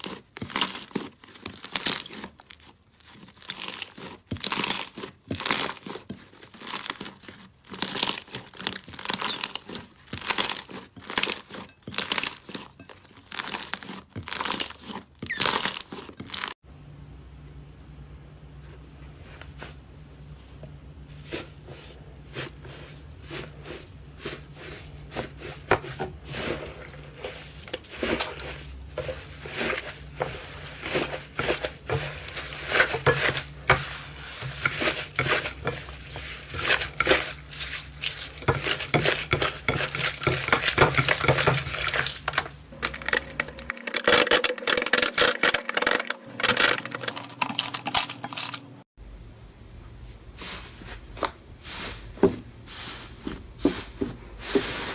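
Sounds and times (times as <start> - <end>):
hands squeezing slime: 0.0 - 16.5.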